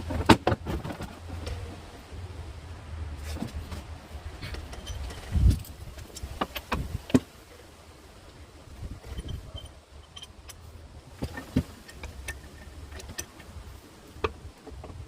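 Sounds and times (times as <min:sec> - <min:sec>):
metallic clicks and clinks: 0:09.0 - 0:10.7.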